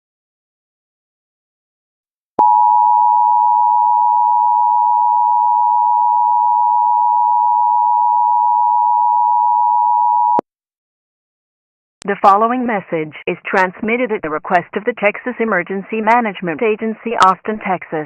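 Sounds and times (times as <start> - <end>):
two-tone alarm: 2.4 - 10.4.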